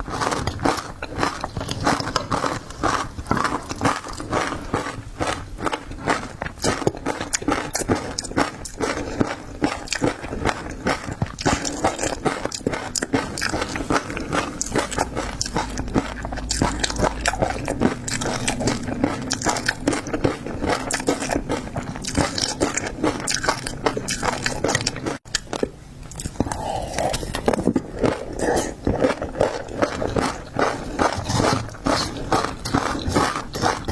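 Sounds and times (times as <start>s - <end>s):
person chewing seafood: 0.0s - 33.9s.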